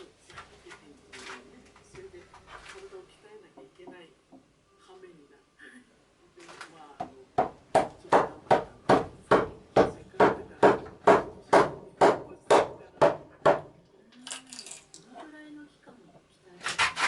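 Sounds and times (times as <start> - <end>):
hand tool striking wood: 7.4 - 13.7.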